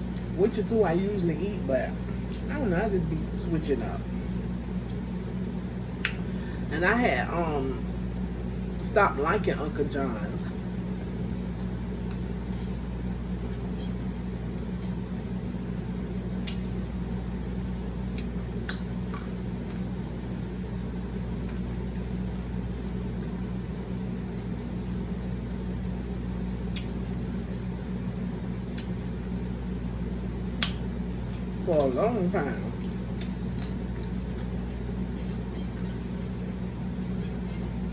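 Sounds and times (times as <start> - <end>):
appliance hum: 0.0 - 37.9
chewing clicks: 16.4 - 16.7, 18.1 - 19.8, 26.7 - 27.0, 32.8 - 34.6.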